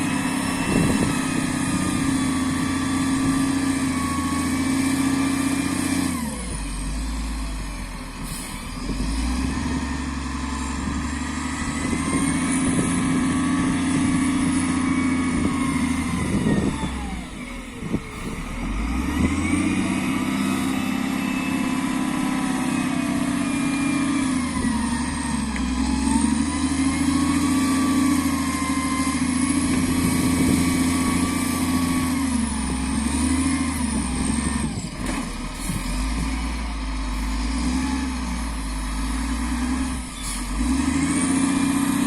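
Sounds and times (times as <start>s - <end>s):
wheel loader diesel engine revving: 0.0s - 42.0s.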